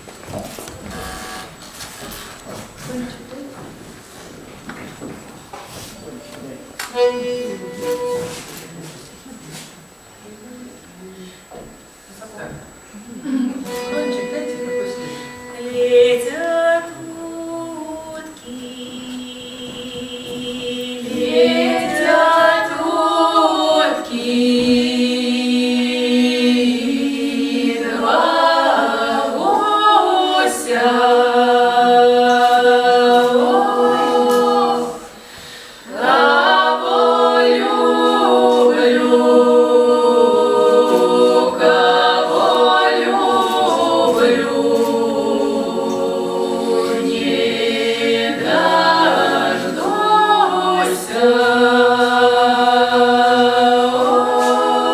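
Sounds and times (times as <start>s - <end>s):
vocal ensemble singing a cappella: 11.4s - 54.9s.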